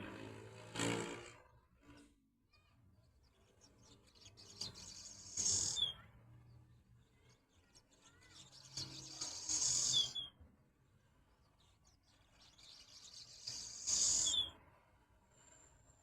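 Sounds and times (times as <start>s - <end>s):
soft bird chirps: 1.8s - 14.7s
swallows chattering: 3.0s - 6.1s, 7.2s - 10.3s, 11.4s - 14.6s.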